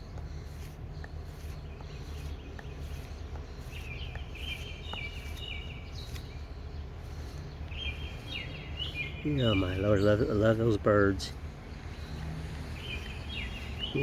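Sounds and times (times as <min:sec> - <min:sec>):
low outdoor rumble: 0:00.0 - 0:14.0
songbird singing trilled phrase: 0:07.7 - 0:14.0.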